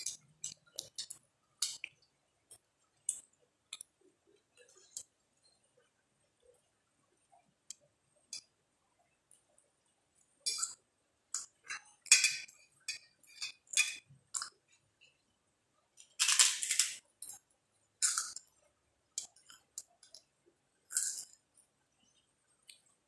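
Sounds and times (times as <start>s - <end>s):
crunchy eating sounds: 16.0s - 18.6s, 20.9s - 23.0s.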